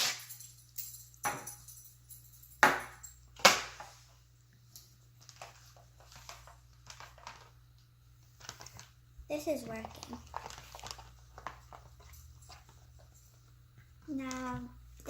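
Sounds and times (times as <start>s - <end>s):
slime being mixed: 5.1s - 15.0s.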